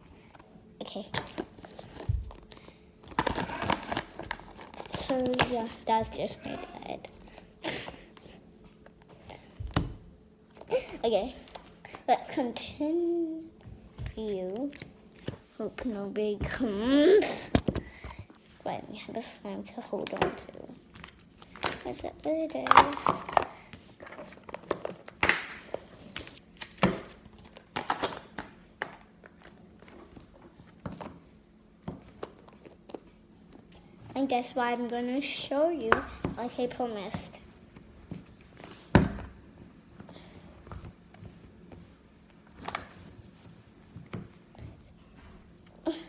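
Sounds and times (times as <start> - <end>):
plastic containers clicking and knocking: 22.5 - 23.6.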